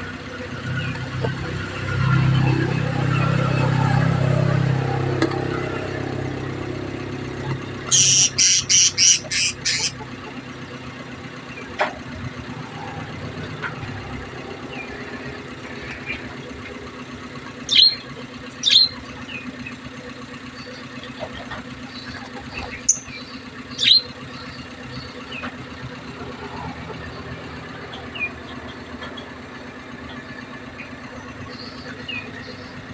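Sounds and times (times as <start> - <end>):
lovebirds chirping: 7.9 - 10.0, 21.9 - 25.4.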